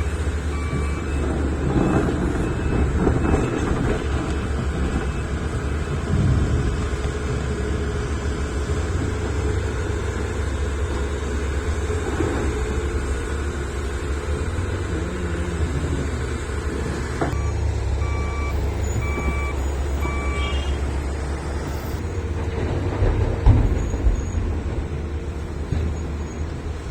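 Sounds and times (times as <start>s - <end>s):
reversing alarm beeps: 0.0s - 6.0s, 17.3s - 22.0s
heavy diesel machinery rumbling: 0.0s - 26.9s.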